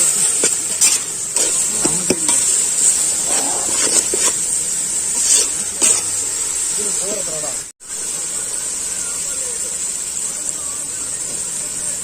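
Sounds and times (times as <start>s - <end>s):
spices sizzling in oil: 0.0s - 12.0s
ladle scraping a pot: 0.4s - 4.4s, 5.2s - 6.2s.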